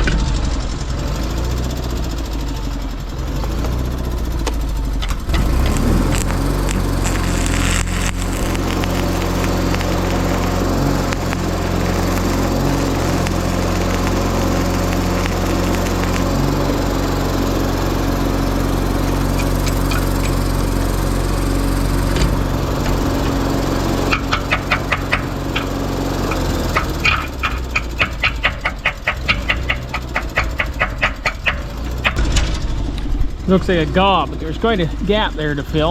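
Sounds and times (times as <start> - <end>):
welder engine running: 0.1 - 35.9
stick welding crackle: 3.6 - 32.2
sharp metallic taps: 24.1 - 32.4.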